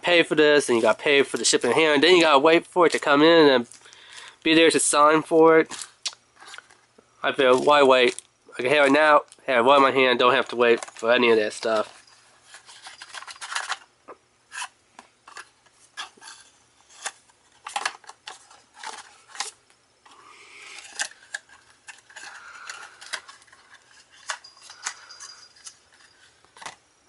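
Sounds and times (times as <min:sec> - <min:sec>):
packaging rustling: 0:10.3 - 0:13.9, 0:14.5 - 0:26.8.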